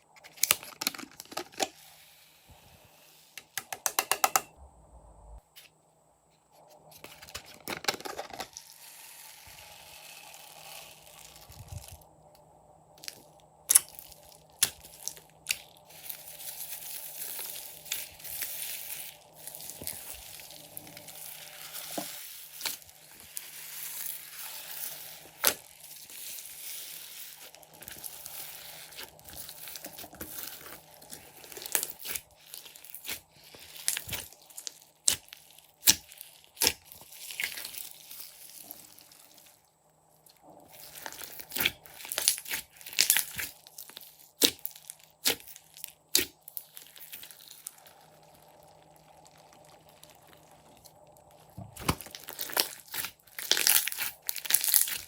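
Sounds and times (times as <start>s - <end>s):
slime popping and crackling: 9.3s - 12.0s, 13.0s - 39.5s, 40.7s - 55.0s
hands squishing slime: 13.0s - 39.4s, 40.8s - 50.8s, 51.7s - 55.0s.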